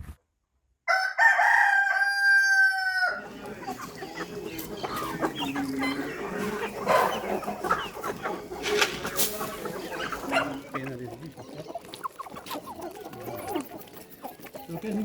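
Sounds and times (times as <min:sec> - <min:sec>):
rooster crowing: 0:00.9 - 0:03.3
chicken clucking: 0:00.9 - 0:15.0.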